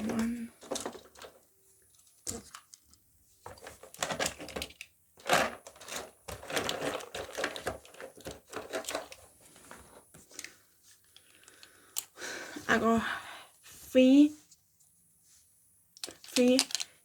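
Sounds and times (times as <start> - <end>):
plastic toys clicking and clattering: 0.0 - 12.2, 16.0 - 17.0.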